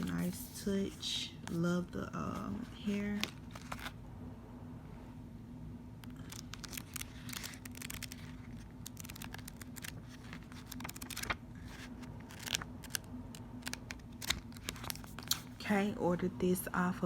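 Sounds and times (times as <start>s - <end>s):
paper rustling: 0.0s - 1.6s, 2.3s - 4.0s, 6.2s - 15.7s
steady low hum: 0.0s - 17.0s.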